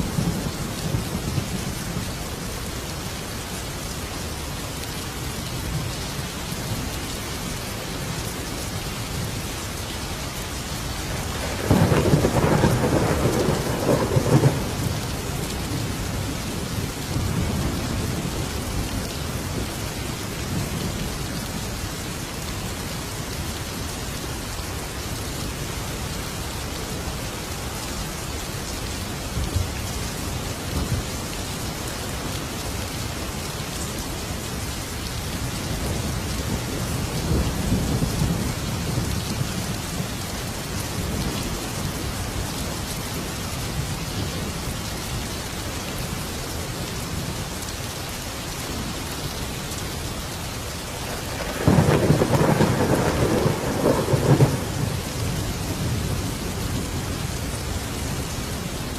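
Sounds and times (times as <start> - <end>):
heavy rain: 0.0 - 58.9
thunder rolling: 11.2 - 15.0, 51.2 - 55.0
loud thunderclap: 11.3 - 14.9, 51.3 - 55.0.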